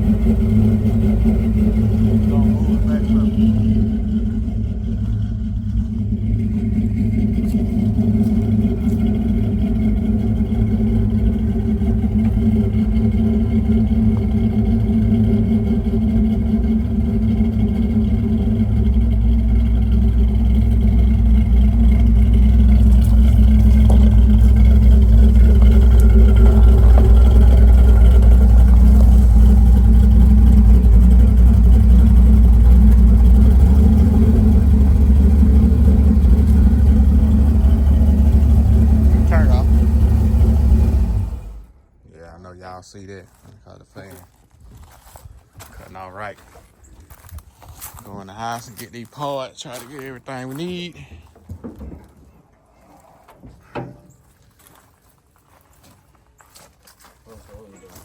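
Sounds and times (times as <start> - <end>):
car engine idling: 0.0 - 42.0.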